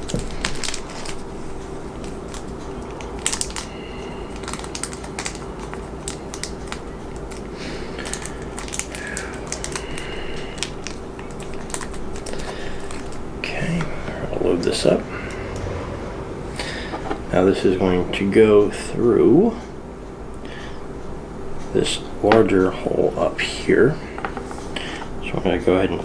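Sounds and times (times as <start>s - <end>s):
steady low hum: 12.9s - 19.7s.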